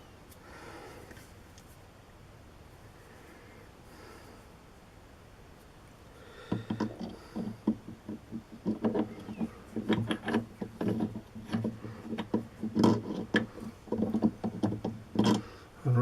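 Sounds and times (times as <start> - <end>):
metal parts and tools clicking: 8.1 - 15.4.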